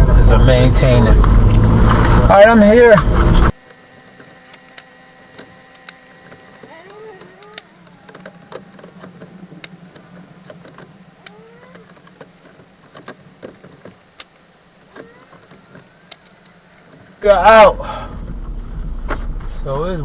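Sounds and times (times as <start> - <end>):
car engine idling: 0.0 - 18.0
sharp ticks: 3.5 - 17.6
faint rising squeak: 3.7 - 17.5.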